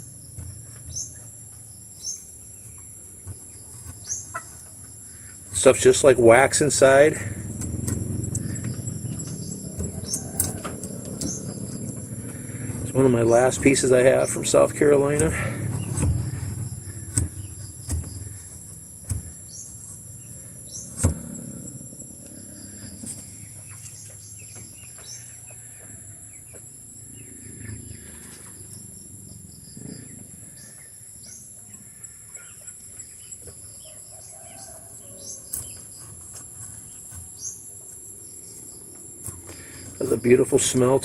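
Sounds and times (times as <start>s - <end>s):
bird chirps: 0.0s - 41.0s
high insect drone: 0.0s - 41.0s
sharp knocks: 7.3s - 19.9s.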